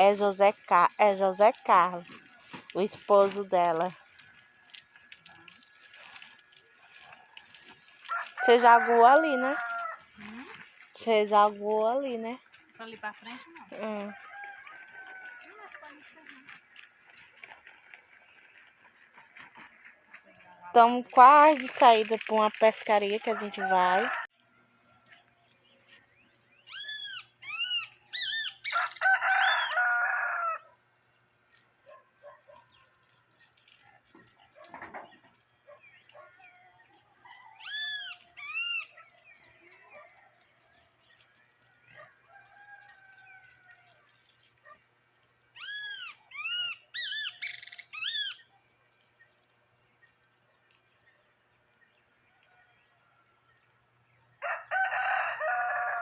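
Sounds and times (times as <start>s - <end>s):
rooster crowing: 8.0s - 10.1s, 14.0s - 15.8s, 23.2s - 25.1s, 27.4s - 30.8s, 41.4s - 44.1s, 54.4s - 56.0s
bird whistling: 26.7s - 28.8s, 45.6s - 48.4s.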